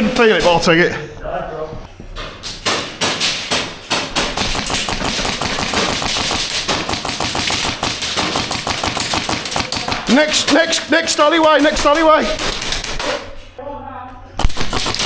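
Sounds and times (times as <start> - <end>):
airsoft guns firing: 2.4 - 13.4, 14.4 - 15.0.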